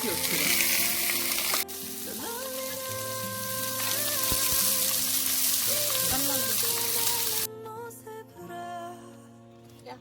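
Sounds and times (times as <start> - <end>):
food frying sizzle: 0.0 - 7.5
slow background music: 0.0 - 10.0.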